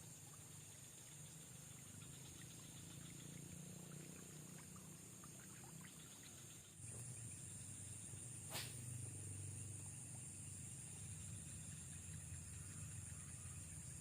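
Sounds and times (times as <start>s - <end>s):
high-pitched insect drone: 9.2s - 14.0s.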